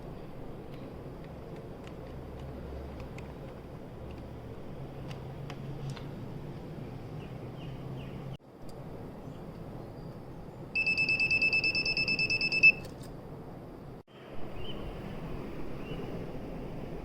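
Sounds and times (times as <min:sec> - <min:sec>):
electronic buzzer pulsed beep: 0:10.8 - 0:12.8.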